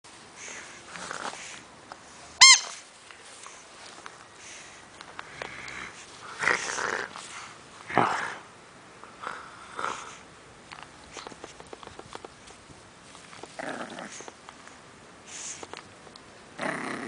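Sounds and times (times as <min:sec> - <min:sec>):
high squeak: 0:02.4 - 0:02.8.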